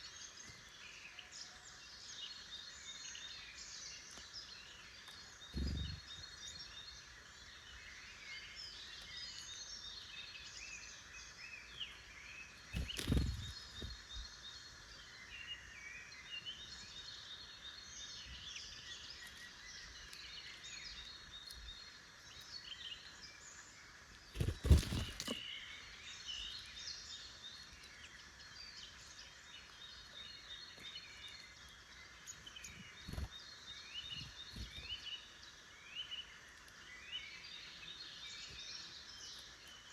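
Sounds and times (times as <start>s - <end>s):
songbirds chirping and singing: 0.0s - 39.9s
dull bumps near microphone: 12.8s - 14.0s, 24.4s - 25.4s.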